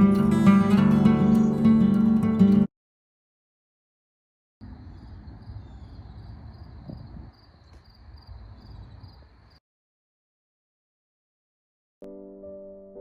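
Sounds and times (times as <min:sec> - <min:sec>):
insects chirring: 0:04.6 - 0:09.6.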